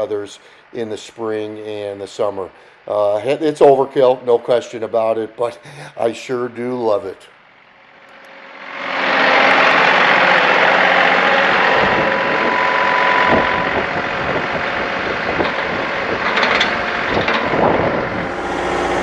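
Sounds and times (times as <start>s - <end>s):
tractor diesel engine running: 18.1s - 19.0s.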